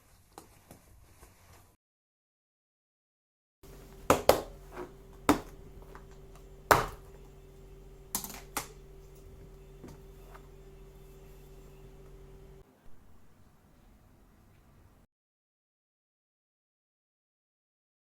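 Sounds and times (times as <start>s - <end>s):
steady low hum: 3.6s - 12.6s
objects knocking and clicking: 3.7s - 12.6s.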